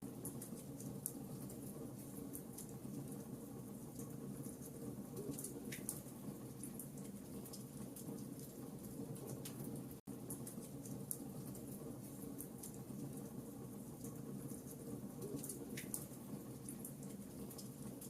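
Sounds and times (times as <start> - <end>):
wood fire crackling: 0.0 - 18.0.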